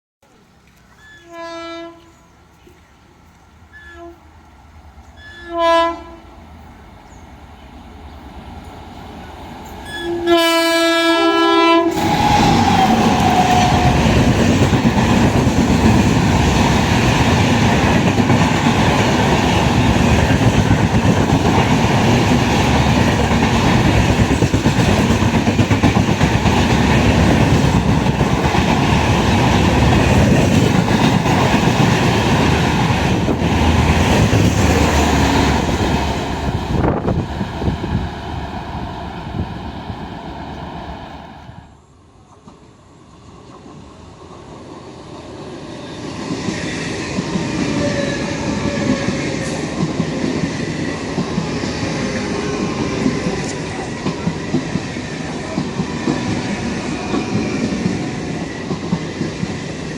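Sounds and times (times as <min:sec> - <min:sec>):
train wheels on rail: 0:00.8 - 0:59.9
train horn: 0:01.0 - 0:02.3, 0:03.7 - 0:04.3, 0:05.2 - 0:06.3, 0:09.8 - 0:14.4, 0:47.6 - 0:49.6.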